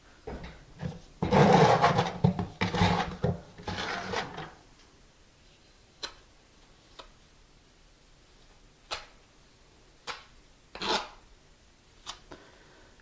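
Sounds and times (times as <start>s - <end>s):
scraping and rubbing of tiles: 0.8s - 4.6s.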